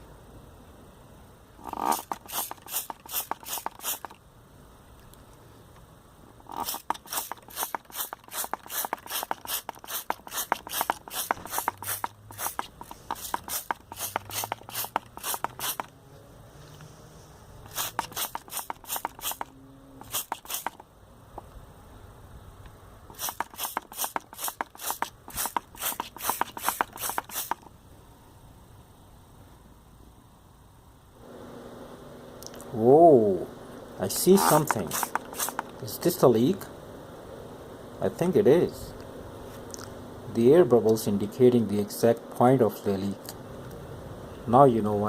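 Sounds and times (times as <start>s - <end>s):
spray bottle hissing sprays: 1.6s - 4.2s, 6.5s - 15.9s, 17.7s - 20.8s, 23.1s - 27.7s, 34.1s - 35.8s.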